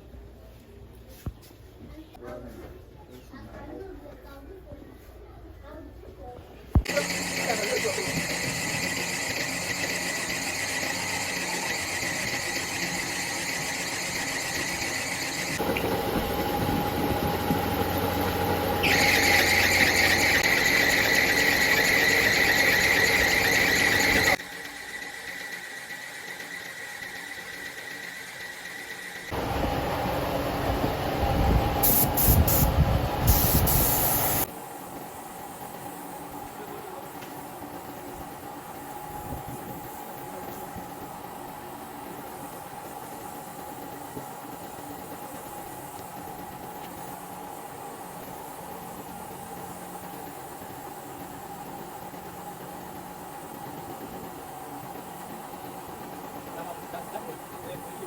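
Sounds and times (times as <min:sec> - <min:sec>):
compressor humming: 0:06.7 - 0:28.4, 0:29.0 - 0:34.5
air hissing spurts: 0:06.8 - 0:15.6, 0:31.7 - 0:34.6
rush of air: 0:31.2 - 0:34.5.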